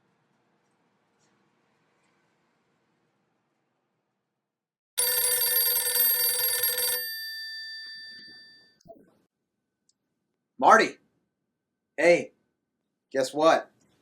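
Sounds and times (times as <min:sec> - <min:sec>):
telephone bell ringing: 0:05.0 - 0:08.8.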